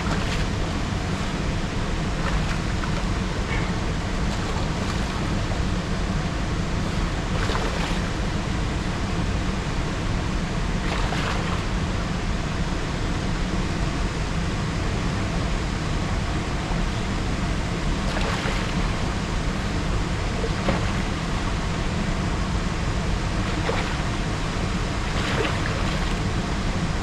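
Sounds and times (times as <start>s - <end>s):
river water rushing: 23.3s - 26.5s.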